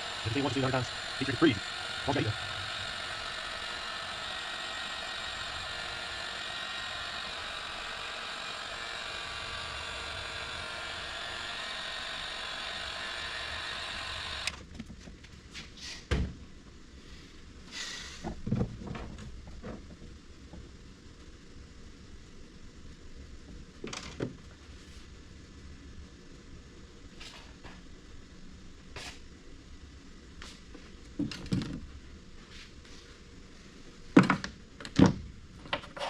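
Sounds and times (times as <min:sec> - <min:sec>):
heat gun blowing: 0:00.0 - 0:14.6.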